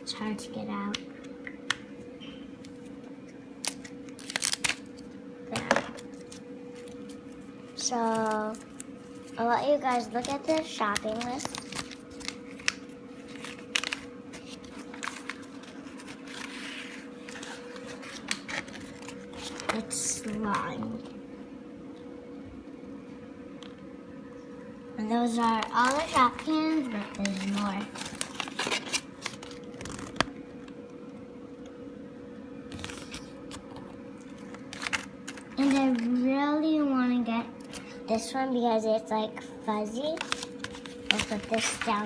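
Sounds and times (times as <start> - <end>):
steady low hum: 0.0 - 42.0
paper rustling: 7.8 - 20.7, 25.2 - 30.4, 32.7 - 36.2, 39.9 - 42.0.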